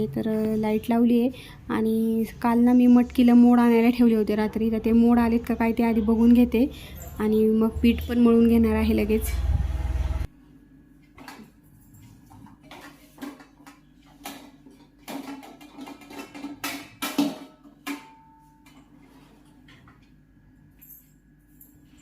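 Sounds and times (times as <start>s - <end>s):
kitchen utensils knocking and clinking: 11.2s - 20.0s.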